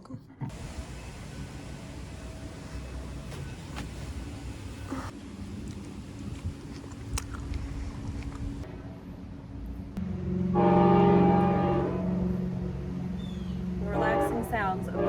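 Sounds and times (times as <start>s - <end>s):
train rumbling past: 0.5s - 6.1s, 8.6s - 15.0s
train horn: 10.0s - 12.9s, 13.8s - 15.0s.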